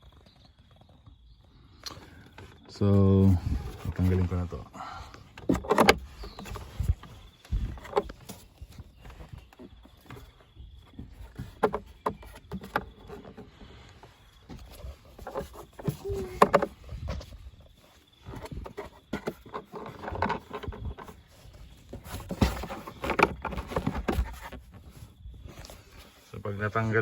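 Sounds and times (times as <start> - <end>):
plastic clicks and knocks: 5.4 - 6.6.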